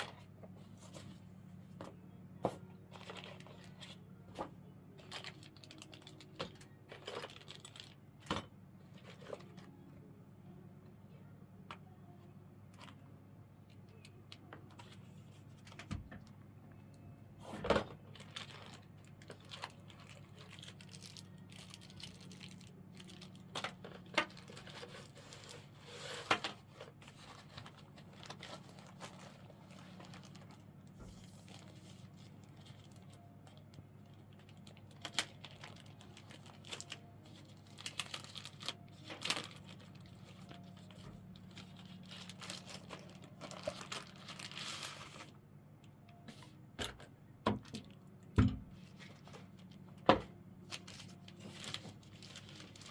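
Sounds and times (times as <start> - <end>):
packaging crinkling and rustling: 0.0 - 9.8, 17.4 - 45.4, 48.7 - 52.9.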